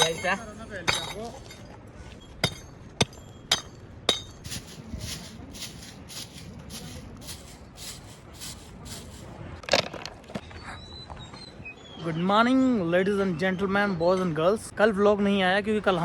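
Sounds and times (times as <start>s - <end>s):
sharp metallic clinks: 0.0s - 4.8s
rhythmic scraping: 2.4s - 9.3s.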